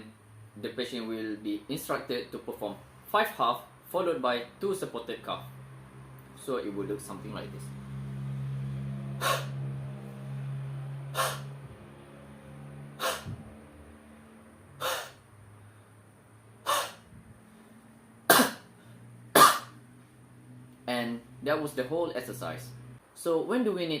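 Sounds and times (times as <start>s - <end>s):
person huffing out breath: 11.2s - 11.5s, 13.0s - 13.4s, 14.8s - 15.2s, 16.7s - 17.0s
person coughing: 18.3s - 18.6s, 19.4s - 19.7s.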